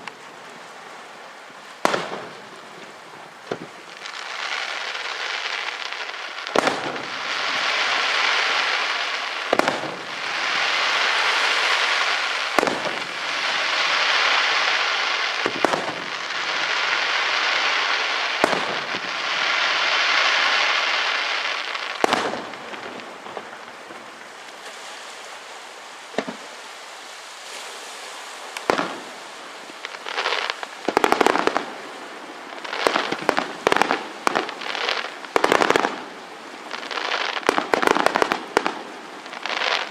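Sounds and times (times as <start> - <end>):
hissing crackle of fireworks: 0.0 - 39.9
sharp firework bangs: 1.8 - 2.4, 9.5 - 10.1, 15.4 - 16.1, 18.4 - 19.1, 22.0 - 22.9.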